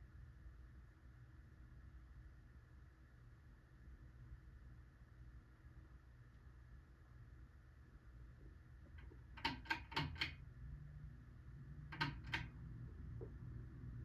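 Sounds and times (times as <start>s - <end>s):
ceiling fan motor humming: 8.8s - 14.0s.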